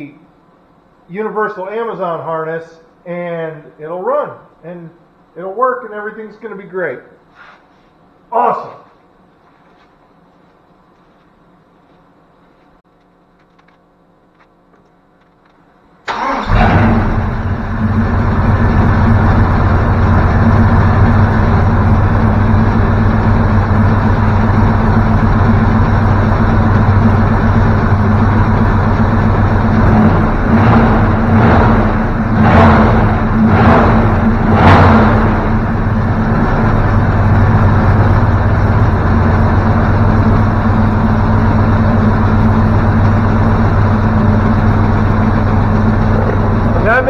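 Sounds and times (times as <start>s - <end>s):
car engine starting and running: 16.0s - 47.0s
engine throttle revs: 16.1s - 47.0s.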